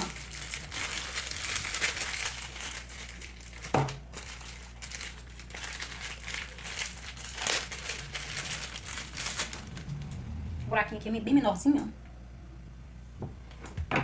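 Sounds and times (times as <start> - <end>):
plastic packaging crinkling: 0.0 - 10.3.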